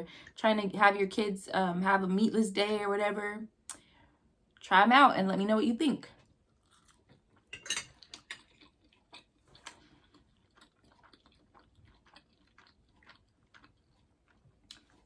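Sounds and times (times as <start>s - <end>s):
chewing: 6.2s - 15.0s
utensil clinking against dish: 7.5s - 8.0s.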